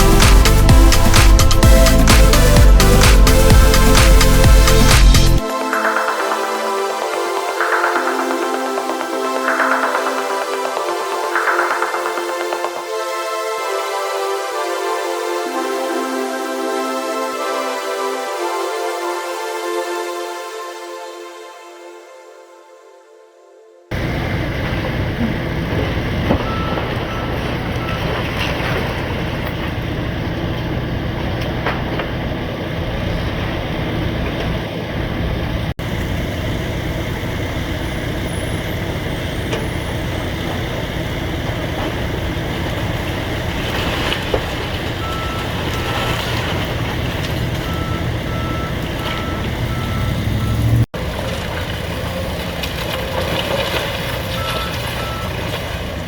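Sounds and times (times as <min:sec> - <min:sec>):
backup alarm beeping: 0:00.0 - 0:12.9, 0:26.3 - 0:28.2, 0:44.9 - 0:50.9, 0:54.4 - 0:55.5
excavator diesel engines: 0:00.0 - 0:19.3, 0:23.9 - 0:56.0
demolition debris crashing: 0:40.0 - 0:49.6, 0:51.0 - 0:56.0.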